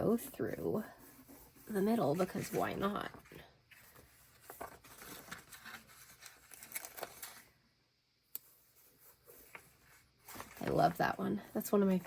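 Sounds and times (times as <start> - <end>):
paper rustling: 1.0 - 7.5, 9.0 - 11.1.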